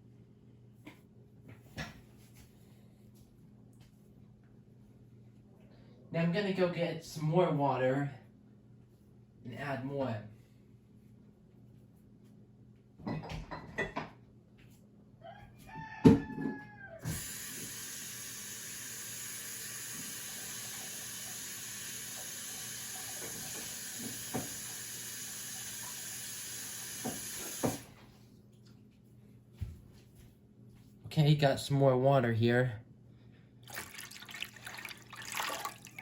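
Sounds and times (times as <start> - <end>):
tap water filling container: 17.1 - 27.9, 33.6 - 36.0.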